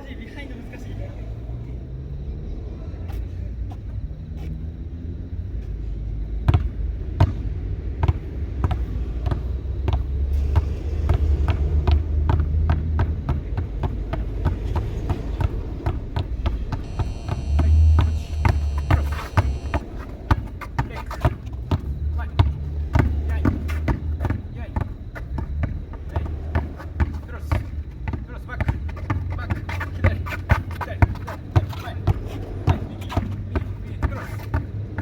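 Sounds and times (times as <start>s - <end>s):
steady low rumble: 5.1s - 29.7s
basketballs bouncing on court: 6.4s - 35.0s.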